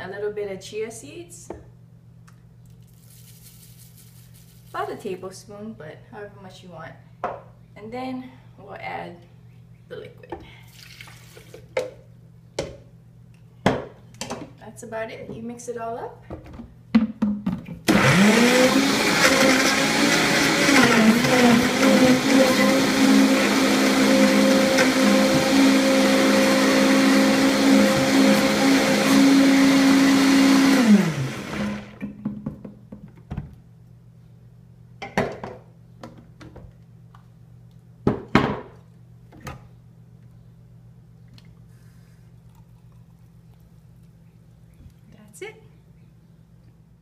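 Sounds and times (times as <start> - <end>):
blender motor running: 17.9 - 32.0.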